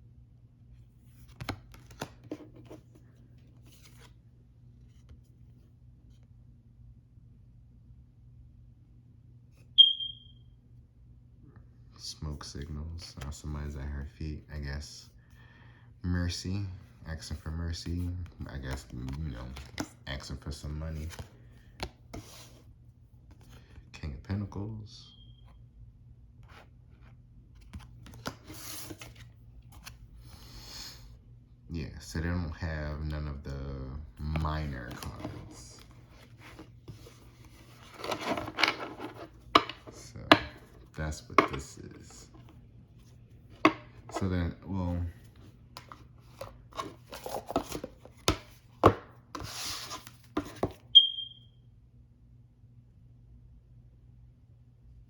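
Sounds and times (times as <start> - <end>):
cards clicking and tapping: 1.3 - 2.8, 34.2 - 41.7, 45.8 - 50.8
short high ping: 9.8 - 10.2
papery card rustle: 34.1 - 50.8.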